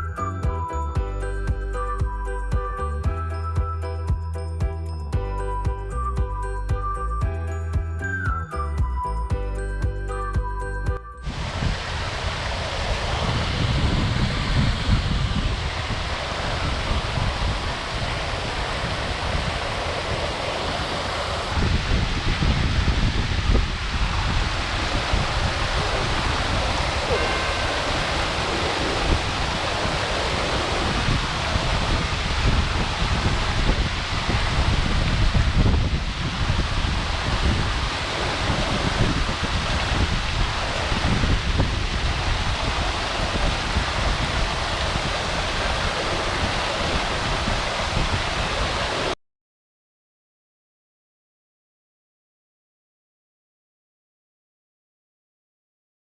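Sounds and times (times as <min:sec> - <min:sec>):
waterfall rushing: 0:11.2 - 0:49.2
wind buffeting microphone: 0:11.2 - 0:49.2.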